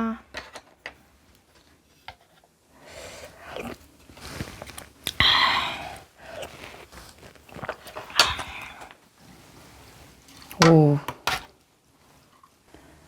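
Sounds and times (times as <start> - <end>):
biting and chewing: 3.2 - 9.0.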